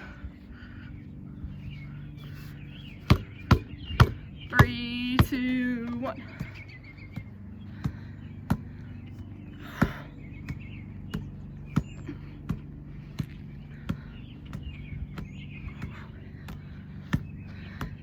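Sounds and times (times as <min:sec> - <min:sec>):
steady low hum: 0:00.0 - 0:18.0
basketball knocking on ground: 0:03.1 - 0:05.4.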